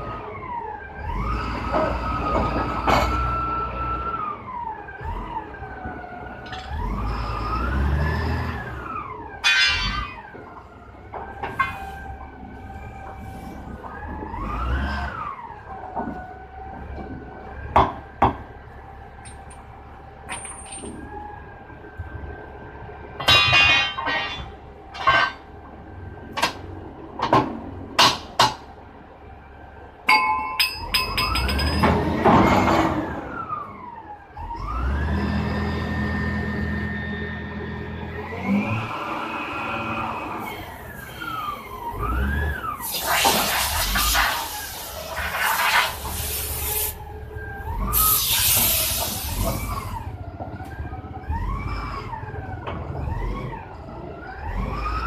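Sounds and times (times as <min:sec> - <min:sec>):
metal clanks and strikes: 0:09.4 - 0:10.4, 0:23.2 - 0:25.5, 0:30.0 - 0:33.0.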